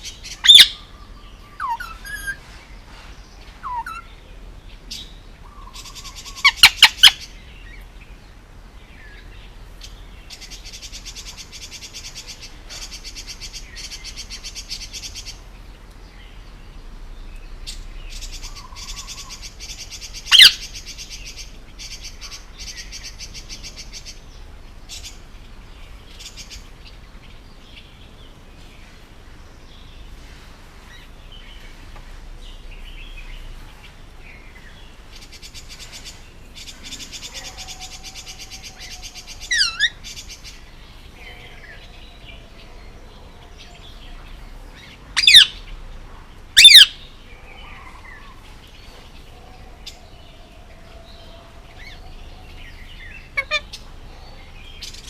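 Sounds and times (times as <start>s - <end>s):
parakeet chattering and calling: 0.0s - 2.6s, 3.5s - 4.2s, 4.9s - 7.8s, 17.8s - 25.3s, 35.1s - 42.6s, 43.8s - 45.7s, 46.5s - 50.0s, 51.2s - 55.0s.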